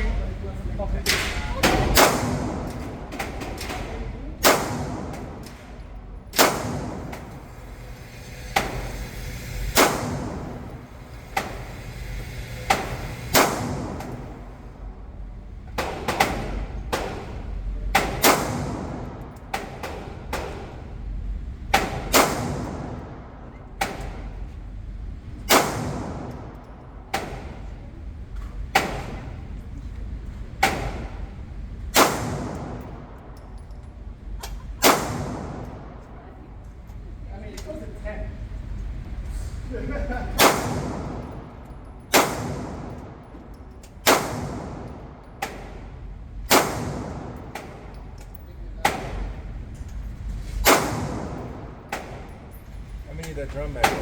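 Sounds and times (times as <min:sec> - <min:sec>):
gunshots with echo: 0:01.1 - 0:07.5, 0:12.7 - 0:14.5, 0:15.8 - 0:20.8, 0:21.7 - 0:24.3, 0:25.4 - 0:27.6, 0:31.9 - 0:33.2, 0:34.8 - 0:36.0, 0:40.3 - 0:41.5, 0:42.1 - 0:43.3, 0:44.0 - 0:45.9, 0:46.5 - 0:48.0, 0:50.6 - 0:52.3.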